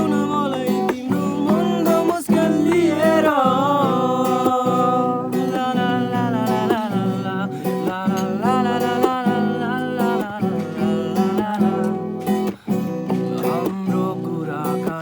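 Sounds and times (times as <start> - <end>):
acoustic guitar strumming: 0.0 - 15.0
person singing: 0.0 - 15.0.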